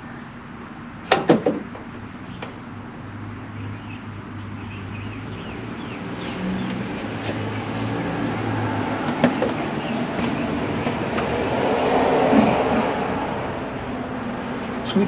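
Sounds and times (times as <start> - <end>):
low mechanical hum: 0.0 - 15.0
sharp knocks: 1.1 - 2.6, 9.0 - 11.8.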